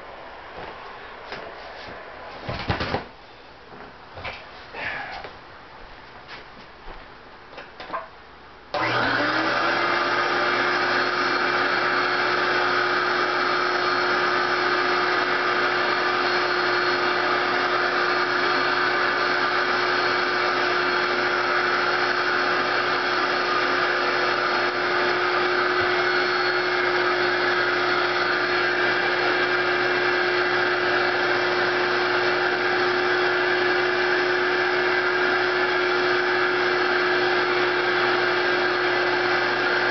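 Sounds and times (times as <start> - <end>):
vacuum cleaner motor running: 8.8 - 39.9.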